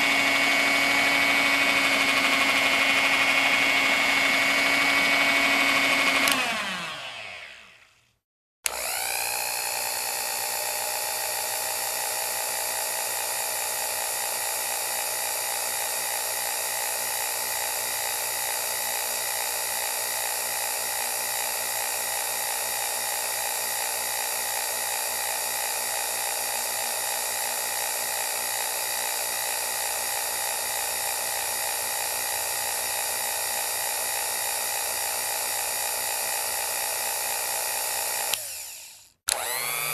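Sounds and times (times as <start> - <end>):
stand mixer winding down: 0.0 - 7.9, 8.7 - 10.4, 37.9 - 39.9
hand mixer running: 0.0 - 8.0, 8.6 - 39.9.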